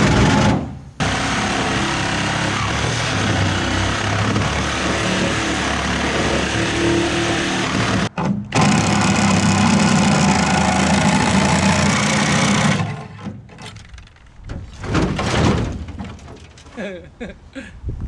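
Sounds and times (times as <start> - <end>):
machine motor running: 1.0 - 13.0
knocks and clatter: 10.8 - 16.8.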